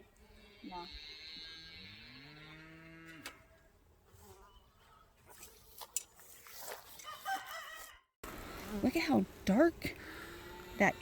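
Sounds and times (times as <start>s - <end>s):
honeybees buzzing: 8.2s - 11.0s.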